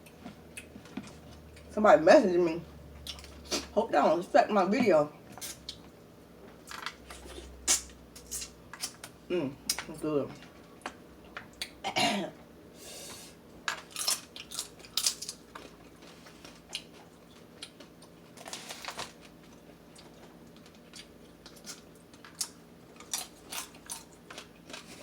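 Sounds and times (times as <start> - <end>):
crab shells cracking and crunching: 13.7 - 25.0
chewing: 14.0 - 25.0.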